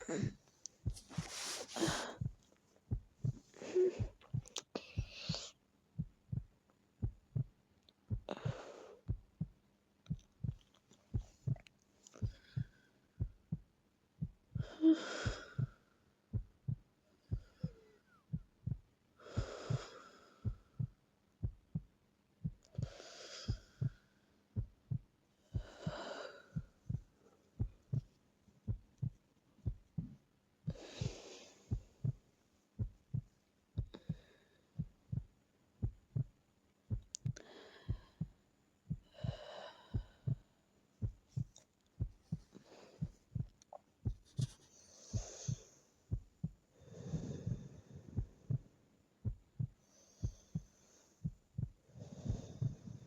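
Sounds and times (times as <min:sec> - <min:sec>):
sleeping breaths: 0:00.0 - 0:02.4, 0:19.2 - 0:20.8, 0:22.7 - 0:24.1, 0:25.5 - 0:27.1, 0:30.7 - 0:32.2, 0:44.2 - 0:45.9, 0:46.7 - 0:48.8, 0:49.8 - 0:53.0.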